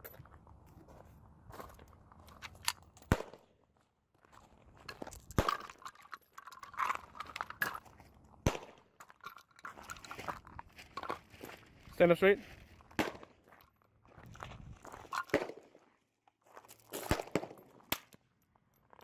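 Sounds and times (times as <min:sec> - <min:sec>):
footsteps on gravel: 0:00.0 - 0:02.6, 0:03.7 - 0:17.9
gunshots: 0:03.1 - 0:03.4, 0:08.4 - 0:08.8, 0:13.0 - 0:13.3.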